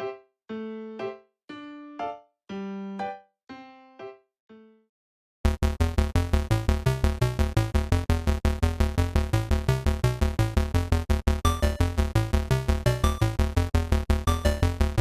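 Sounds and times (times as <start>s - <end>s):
upbeat electronic music: 5.5s - 15.0s.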